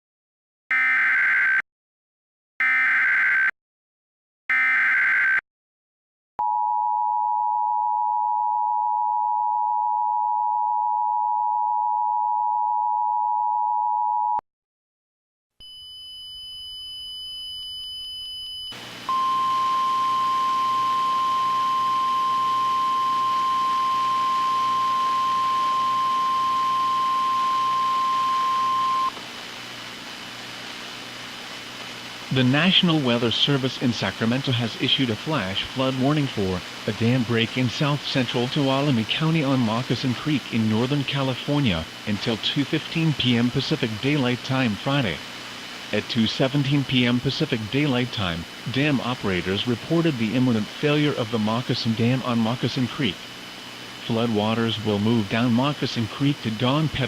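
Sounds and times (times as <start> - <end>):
two-tone attention signal: 17.1 - 29.1
screeching data tones: 18.4 - 29.2
hiss with faint high whine: 18.8 - 57.0.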